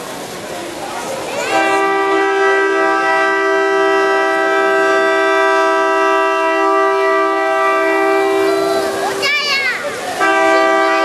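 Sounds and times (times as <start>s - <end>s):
train horn two-note chord: 1.5s - 9.0s, 10.2s - 11.0s.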